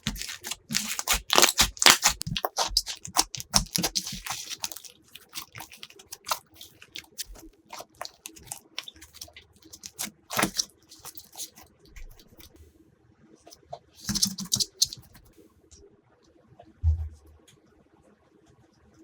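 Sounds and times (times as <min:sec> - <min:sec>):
slime squished by hand: 0:00.0 - 0:12.6, 0:14.0 - 0:15.3.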